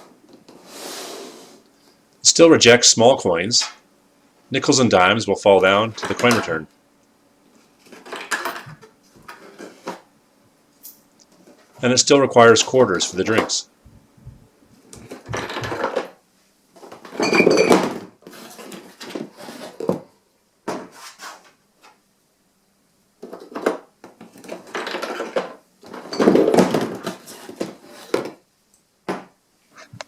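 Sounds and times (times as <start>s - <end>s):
bottle clattering down: 17.1s - 18.0s.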